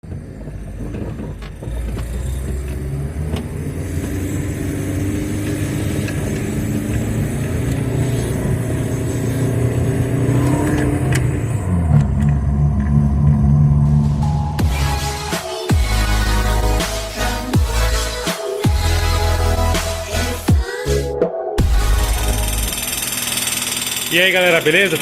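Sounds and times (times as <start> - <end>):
car engine running: 0.0 - 20.9, 21.6 - 25.0.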